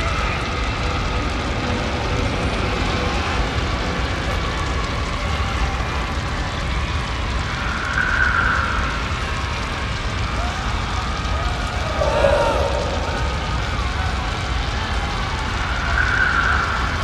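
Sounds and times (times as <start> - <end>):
dense steady rumble: 0.0 - 17.0
faint wavering high tones: 11.6 - 14.6.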